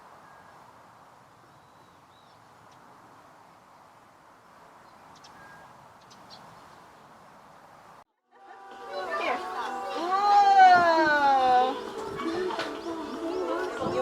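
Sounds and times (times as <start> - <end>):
faint bird chirps: 4.8 - 6.8.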